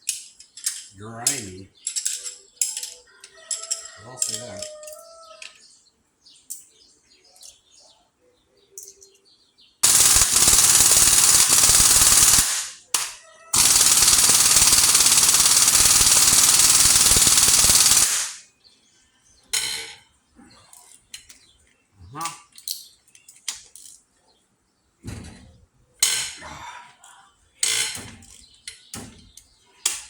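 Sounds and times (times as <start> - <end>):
impact wrench hammering: 9.8 - 18.4.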